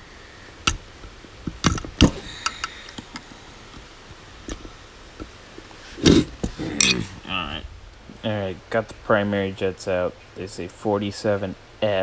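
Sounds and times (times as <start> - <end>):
screwdriver metal clicks and taps: 0.6 - 5.4
metal clatter: 0.6 - 7.2.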